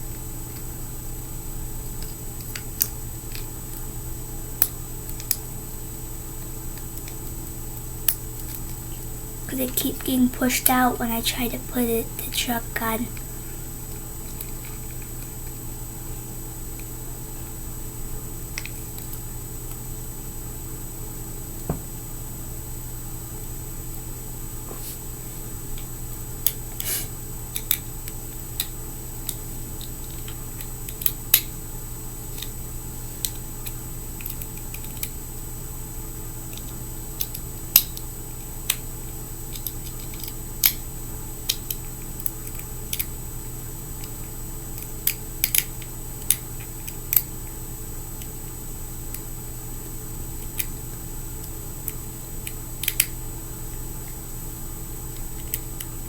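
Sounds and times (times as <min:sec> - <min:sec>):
steady background hum: 0:00.0 - 0:56.0
small clicks and taps: 0:04.6 - 0:05.4, 0:27.5 - 0:31.5, 0:33.2 - 0:35.2, 0:36.5 - 0:38.1, 0:39.5 - 0:40.8, 0:44.8 - 0:47.3, 0:51.4 - 0:53.2.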